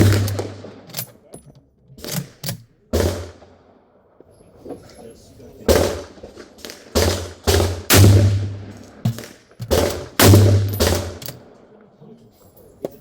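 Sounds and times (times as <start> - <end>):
gunshots echoing: 0.0 - 1.0, 2.0 - 4.0, 5.6 - 11.8.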